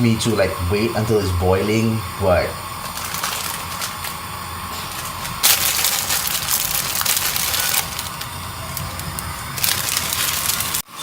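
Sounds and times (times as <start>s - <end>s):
water boiling in pan: 0.0s - 11.0s.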